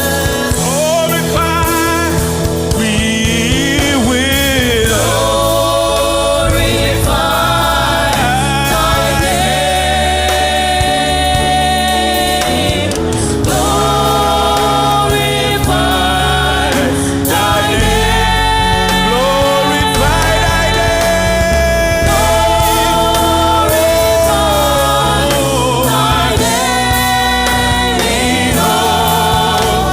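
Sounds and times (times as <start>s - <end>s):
band accompaniment with bass: 0.0s - 29.9s
gospel choir singing: 0.0s - 29.9s.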